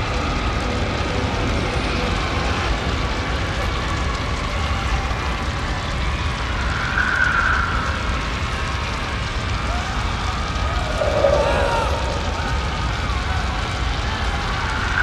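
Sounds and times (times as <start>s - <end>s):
low rumbling drone: 7.6s - 15.0s
wavering wail-like tones: 9.7s - 15.0s.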